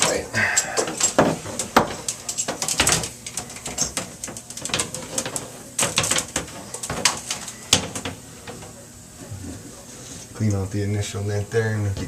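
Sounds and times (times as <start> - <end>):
hard objects clicking and clattering: 0.0 - 8.8.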